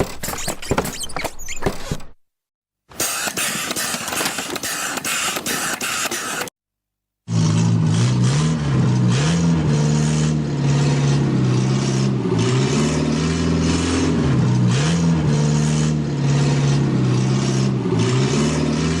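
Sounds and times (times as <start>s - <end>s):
small car engine revving: 7.3s - 19.0s.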